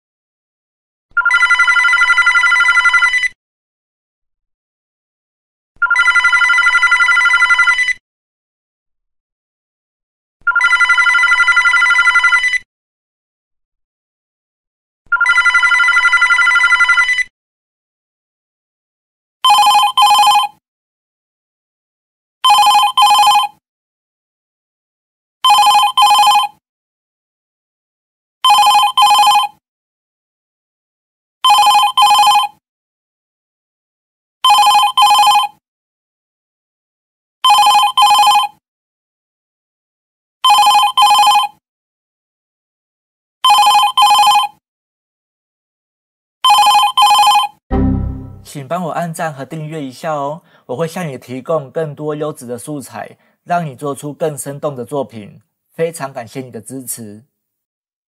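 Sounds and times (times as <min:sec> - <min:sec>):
high-pitched telephone ring: 0:01.2 - 0:03.3, 0:10.5 - 0:12.5, 0:15.2 - 0:17.3, 0:19.4 - 0:20.5, 0:22.4 - 0:23.5, 0:25.4 - 0:26.5, 0:28.4 - 0:29.6, 0:31.4 - 0:32.5, 0:34.4 - 0:35.6, 0:37.4 - 0:38.6, 0:40.4 - 0:41.6, 0:43.4 - 0:44.6, 0:46.4 - 0:47.6.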